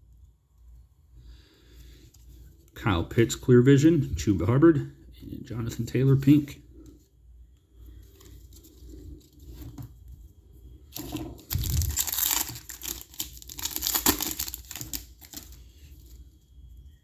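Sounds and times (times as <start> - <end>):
light card handling: 10.9 - 16.2
foil wrapper tearing and crinkling: 11.0 - 15.7.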